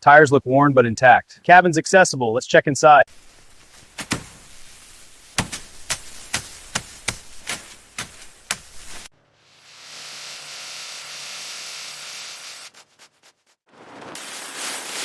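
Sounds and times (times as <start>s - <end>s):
steady hiss: 3.1s - 10.6s
sharp knocking or chopping strikes: 3.7s - 4.6s, 5.3s - 9.1s.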